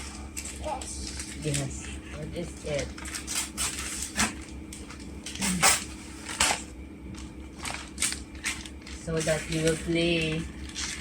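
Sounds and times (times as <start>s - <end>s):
packaging knocks and rustles: 6.2s - 11.0s.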